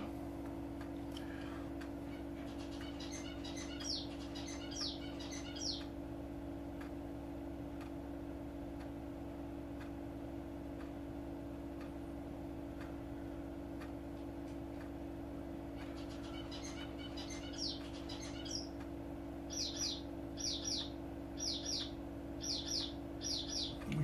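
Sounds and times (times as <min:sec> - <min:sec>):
steady low hum: 0:00.0 - 0:24.0
faint clock ticks: 0:00.4 - 0:02.0, 0:05.6 - 0:06.0, 0:06.7 - 0:07.0, 0:07.7 - 0:08.0, 0:08.6 - 0:15.3, 0:18.5 - 0:19.0
small bird chirping: 0:02.0 - 0:06.0, 0:15.7 - 0:24.0.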